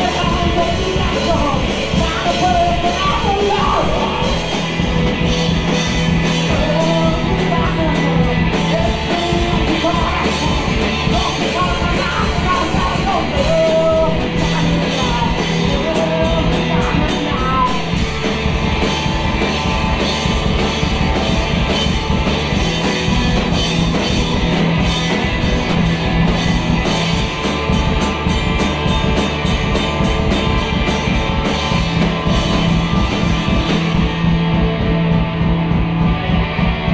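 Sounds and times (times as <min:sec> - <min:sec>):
person singing or shouting: 0:00.0 - 0:04.4, 0:06.4 - 0:18.0
dense drumming: 0:00.0 - 0:36.9
loud rock music: 0:00.0 - 0:36.9.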